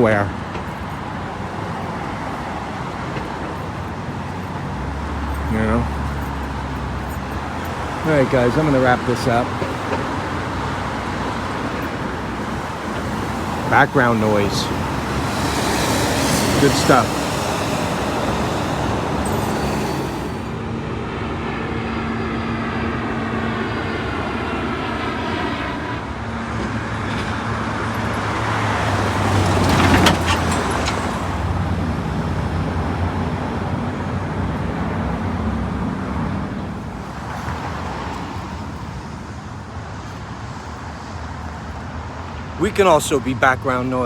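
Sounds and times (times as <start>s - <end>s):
cars going by: 0.0s - 44.0s
vehicle passing close: 0.6s - 20.9s.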